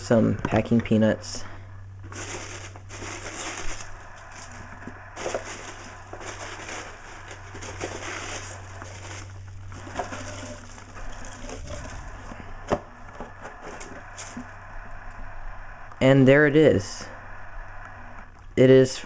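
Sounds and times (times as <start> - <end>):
packing peanuts rustling: 2.0 - 14.5.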